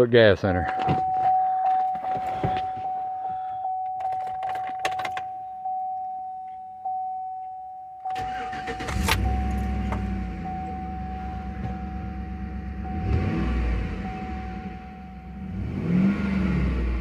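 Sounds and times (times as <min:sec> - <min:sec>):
warning chime: 0:00.7 - 0:15.6
truck starter cranking: 0:08.1 - 0:10.1
truck engine running: 0:08.2 - 0:15.9.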